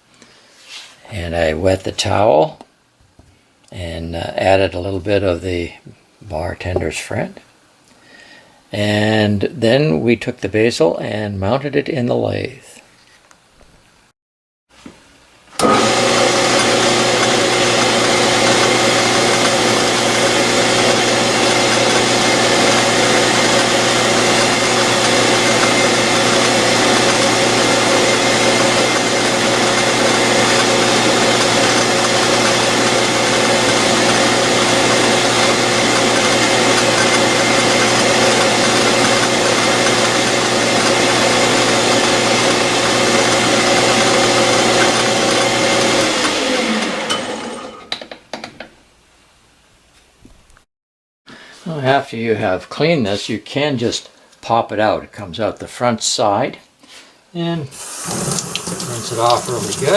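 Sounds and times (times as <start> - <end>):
lathe motor humming: 15.6 - 47.9.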